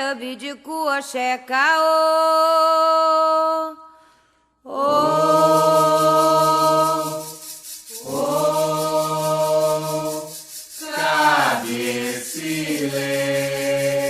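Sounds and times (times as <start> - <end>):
person chanting long sliding notes: 4.8 - 14.0.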